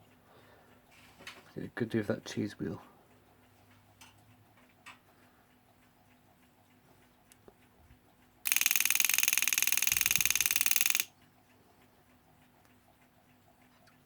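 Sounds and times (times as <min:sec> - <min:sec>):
alarm clock bell ringing: 0:08.5 - 0:11.1.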